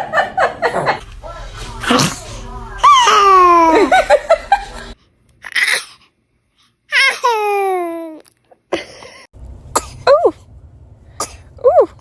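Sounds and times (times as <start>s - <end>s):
baby crying: 2.8s - 4.0s.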